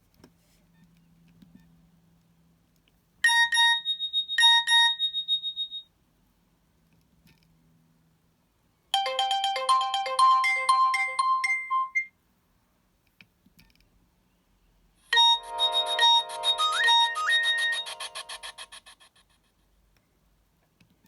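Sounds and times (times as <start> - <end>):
polyphonic ringtone melody: 9.0 - 12.1, 15.1 - 19.1.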